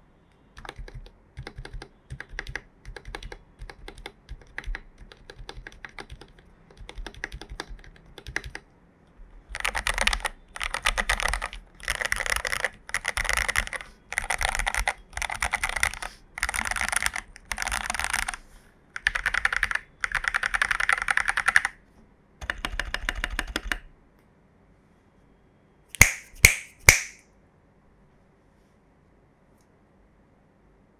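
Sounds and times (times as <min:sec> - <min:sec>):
mechanical keyboard typing: 0:00.6 - 0:08.6, 0:09.5 - 0:18.4, 0:19.0 - 0:21.8, 0:22.4 - 0:23.9.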